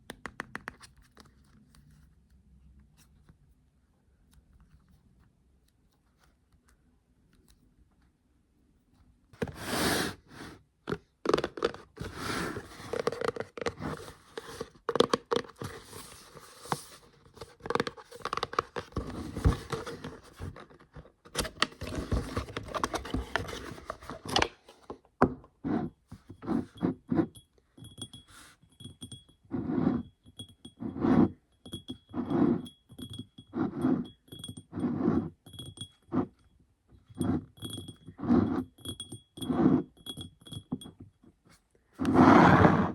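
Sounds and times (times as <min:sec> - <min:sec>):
items tapping and scraping: 0:10.3 - 0:41.4
packaging crinkling and rustling: 0:12.8 - 0:24.9.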